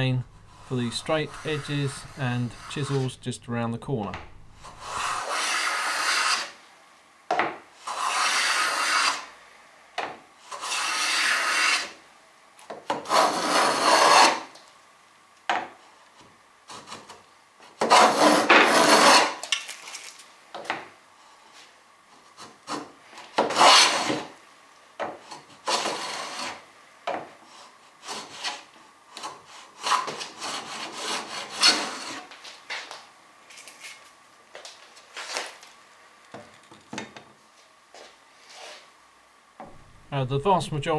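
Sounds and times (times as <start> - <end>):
hand plane cutting wood: 0.0 - 3.2, 4.6 - 6.6, 7.8 - 9.3, 10.5 - 12.0, 12.9 - 14.6, 17.8 - 19.4, 22.4 - 24.3, 25.3 - 26.6, 27.4 - 32.3
quick scraping strokes: 0.5 - 3.2, 4.6 - 6.4.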